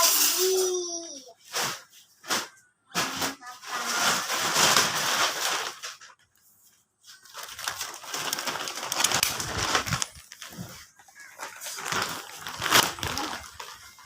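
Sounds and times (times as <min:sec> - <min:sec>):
clothing bale scraping and crackling: 0:03.3 - 0:06.0, 0:07.1 - 0:14.0.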